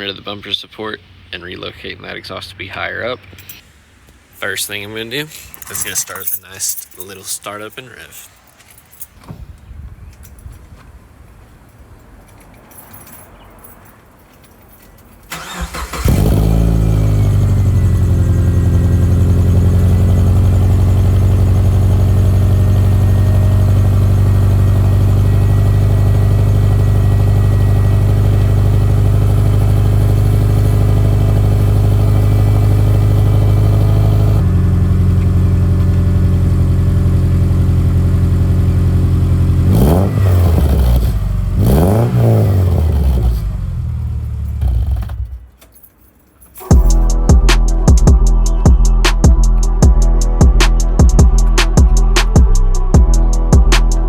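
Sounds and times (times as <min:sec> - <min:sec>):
car engine starting and idling: 0:15.2 - 0:45.5, 0:46.6 - 0:54.0.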